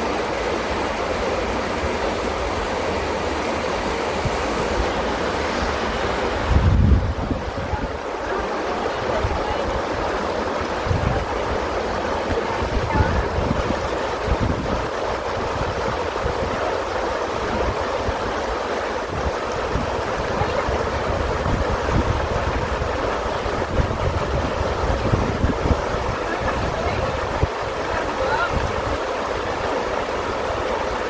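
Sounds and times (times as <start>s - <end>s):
running water rushing: 0.0s - 31.0s
wind buffeting microphone: 6.3s - 8.2s, 8.8s - 16.7s, 19.0s - 29.5s.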